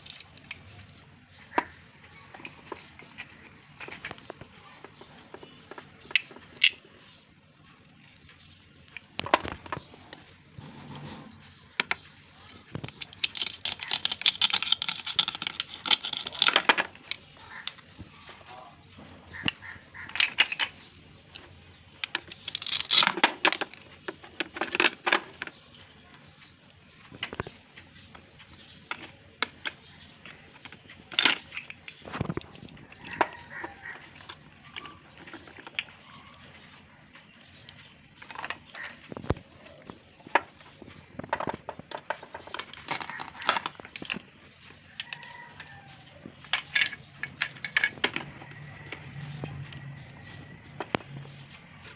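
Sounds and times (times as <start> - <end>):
plastic toy pieces clicking: 12.9 - 17.8, 22.0 - 25.5.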